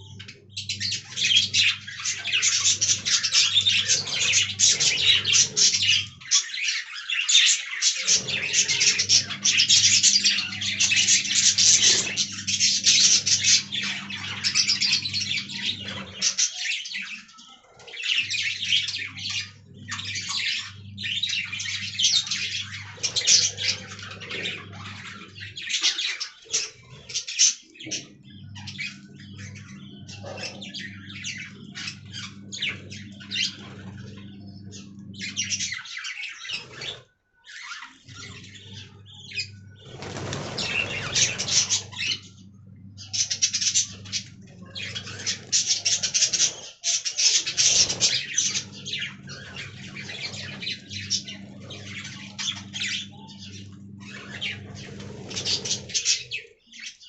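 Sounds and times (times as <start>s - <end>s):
steady low hum: 0.0s - 6.6s, 26.5s - 35.8s, 38.1s - 56.4s
budgerigars chirping and chattering: 0.0s - 57.0s.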